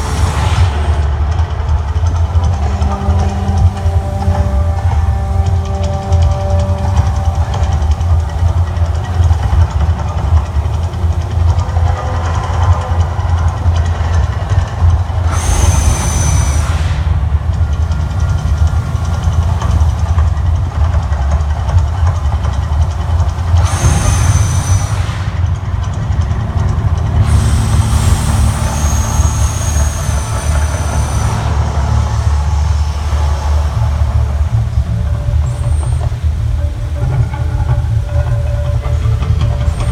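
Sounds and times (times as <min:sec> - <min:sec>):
deep rumble: 0:00.0 - 0:39.9
bursts of hissing: 0:15.2 - 0:17.7, 0:23.5 - 0:25.8
thin high whistle: 0:15.3 - 0:17.2, 0:27.2 - 0:34.0.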